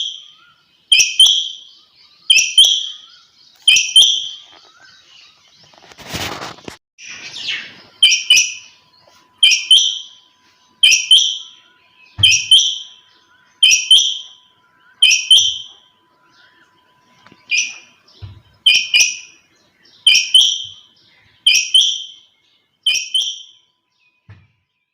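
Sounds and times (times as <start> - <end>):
loud rustle: 5.6 - 6.8.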